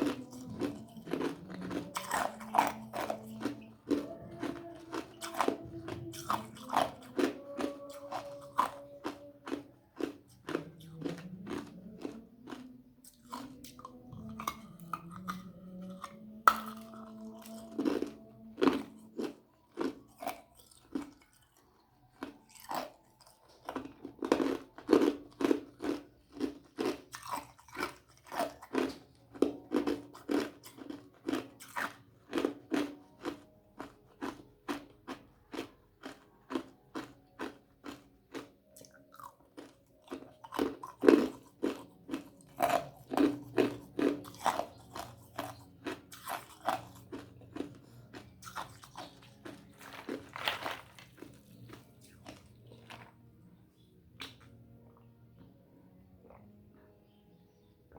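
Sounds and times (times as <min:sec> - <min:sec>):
ice crunched between teeth: 0:16.0 - 0:53.2.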